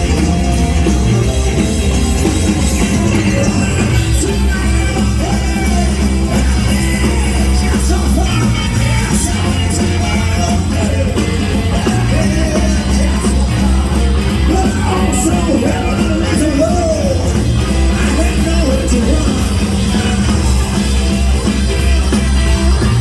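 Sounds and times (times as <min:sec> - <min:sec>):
bass guitar: 0:00.0 - 0:23.0
drums: 0:00.0 - 0:23.0
electric guitar: 0:00.0 - 0:23.0
person singing: 0:00.0 - 0:23.0.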